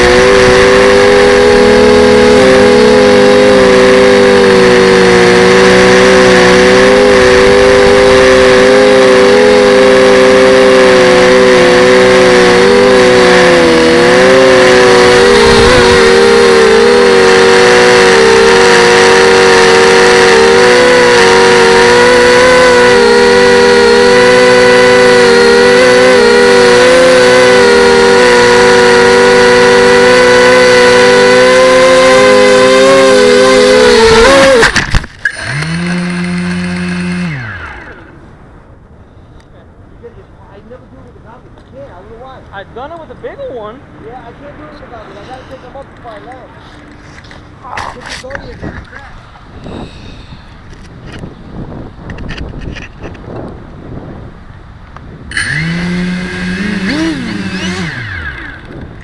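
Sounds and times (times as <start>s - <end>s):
drone propellers whining: 0.0s - 38.6s, 42.5s - 59.0s.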